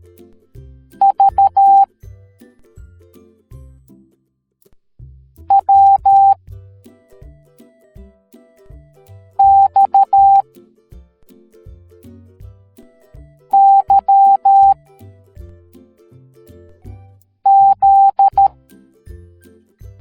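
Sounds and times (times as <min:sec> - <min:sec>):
light background music: 0:00.0 - 0:04.3, 0:05.3 - 0:20.0
morse code beeps: 0:01.0 - 0:01.9, 0:05.5 - 0:06.4, 0:09.4 - 0:10.4, 0:13.6 - 0:14.8, 0:17.5 - 0:18.5.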